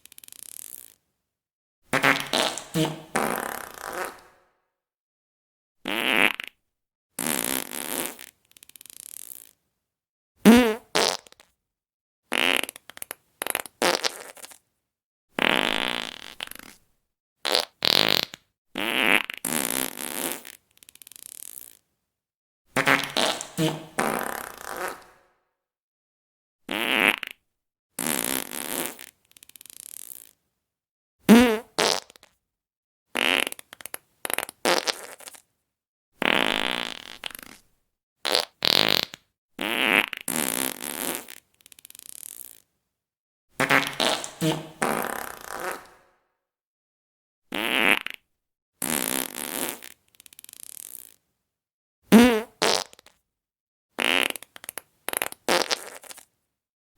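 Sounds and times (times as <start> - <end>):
fart sounds: 0.1 - 1.0, 1.9 - 4.5, 5.8 - 6.6, 7.2 - 9.6, 10.4 - 11.5, 12.3 - 14.6, 15.4 - 16.8, 17.4 - 21.8, 22.8 - 25.3, 26.7 - 27.4, 28.0 - 30.4, 31.3 - 32.3, 33.2 - 35.5, 36.2 - 37.6, 38.2 - 42.6, 43.6 - 46.2, 47.5 - 51.2, 52.1 - 53.2, 54.0 - 56.3.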